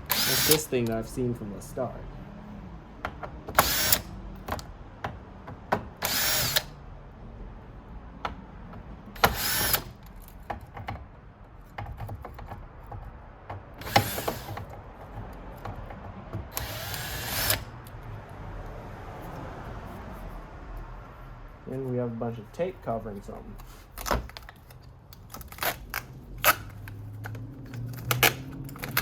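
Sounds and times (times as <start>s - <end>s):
cordless screwdriver running: 0.0s - 0.7s, 3.6s - 4.1s, 6.0s - 6.7s, 9.2s - 9.9s, 13.8s - 14.6s, 16.5s - 17.7s.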